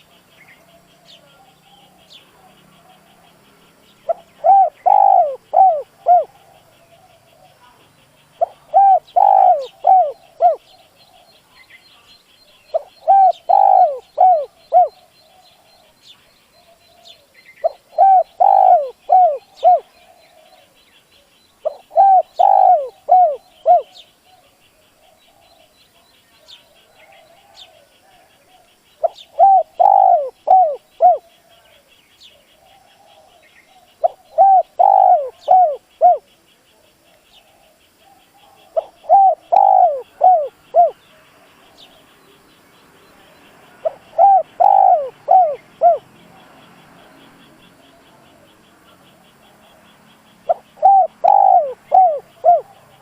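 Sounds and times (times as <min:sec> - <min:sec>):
dove cooing: 0:00.0 - 0:03.3, 0:04.0 - 0:11.4, 0:12.7 - 0:16.0, 0:16.6 - 0:20.8, 0:21.6 - 0:25.7, 0:26.7 - 0:31.8, 0:32.4 - 0:36.3, 0:37.4 - 0:41.0, 0:43.8 - 0:46.6, 0:49.4 - 0:53.0.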